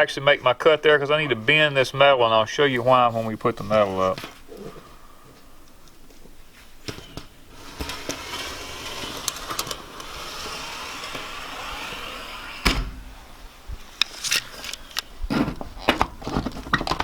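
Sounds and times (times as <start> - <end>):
metal panel being cut: 7.5 - 13.4.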